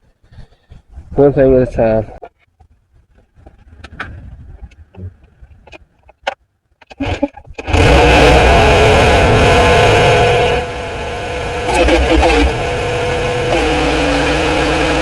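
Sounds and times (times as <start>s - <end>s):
engine running loudly: 7.0s - 15.0s.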